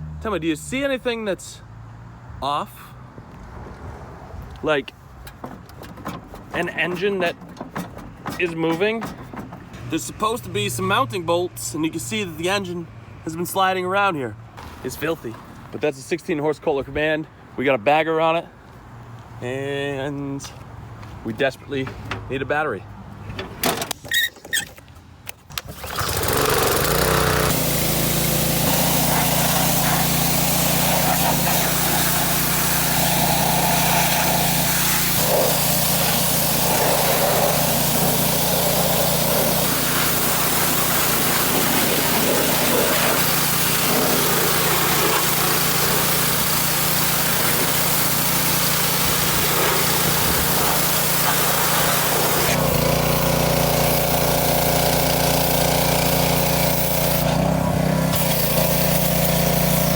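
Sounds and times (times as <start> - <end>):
small engine running: 25.7 - 59.9.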